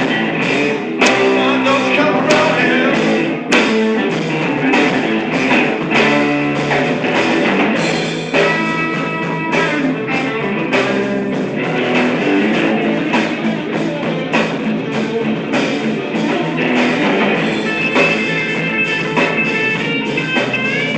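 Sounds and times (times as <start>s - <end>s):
drums: 0.0s - 20.9s
plucked guitar: 0.0s - 20.9s.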